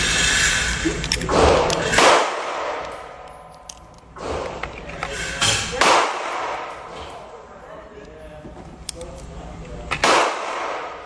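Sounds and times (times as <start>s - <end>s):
gunshots with echo: 1.3s - 2.9s, 5.8s - 6.8s, 10.0s - 11.0s.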